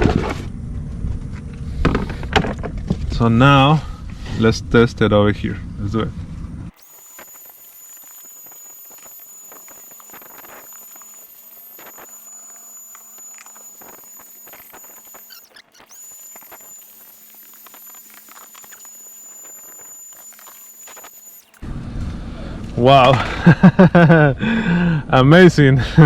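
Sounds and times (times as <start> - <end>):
handheld vacuum whining: 6.7 - 24.2
brush nozzle crackling on grit: 6.8 - 21.6.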